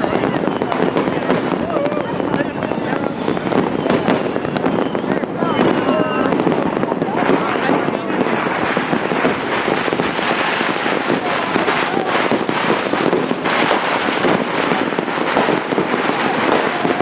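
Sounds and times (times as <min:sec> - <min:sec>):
firecrackers crackling: 0:00.0 - 0:17.0.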